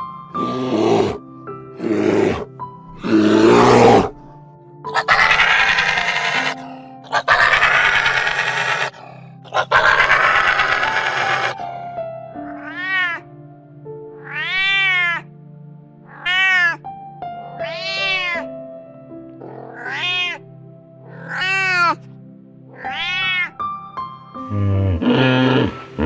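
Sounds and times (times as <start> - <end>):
cat meowing: 4.9 - 11.6, 12.4 - 13.3, 14.2 - 15.3, 16.0 - 16.8, 17.5 - 18.5, 19.4 - 22.0, 22.7 - 23.6.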